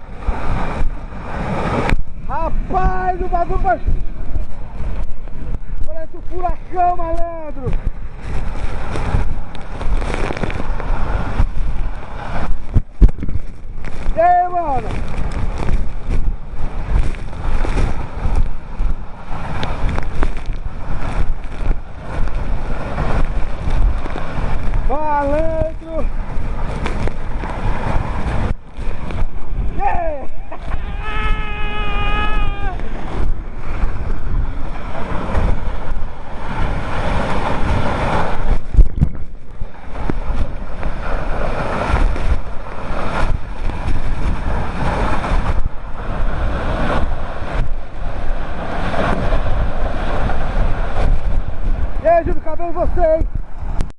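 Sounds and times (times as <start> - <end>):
heavy waterfall: 0.0 - 53.8
wind buffeting microphone: 0.0 - 53.9
waterfall rushing: 20.8 - 38.4.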